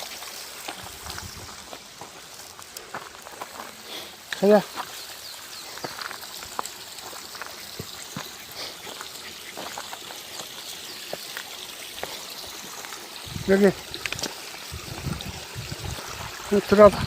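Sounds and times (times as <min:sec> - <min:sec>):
stream trickling over rocks: 0:00.0 - 0:17.0
small splashes and clicks: 0:05.7 - 0:13.2, 0:13.8 - 0:16.4.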